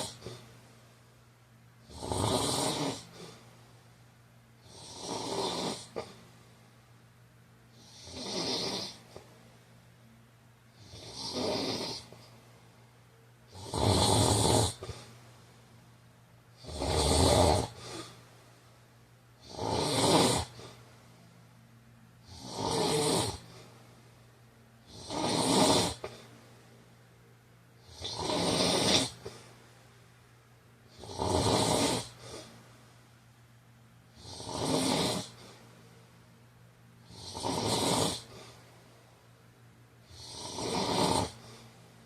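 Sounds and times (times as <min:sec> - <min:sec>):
man snoring: 0:00.0 - 0:00.4, 0:01.8 - 0:03.4, 0:04.6 - 0:06.2, 0:07.7 - 0:09.2, 0:10.8 - 0:12.3, 0:13.5 - 0:15.1, 0:16.6 - 0:18.1, 0:19.4 - 0:20.8, 0:22.2 - 0:23.6, 0:24.8 - 0:26.2, 0:27.8 - 0:29.4, 0:30.9 - 0:32.5, 0:34.1 - 0:35.6, 0:37.0 - 0:38.6, 0:40.0 - 0:41.7.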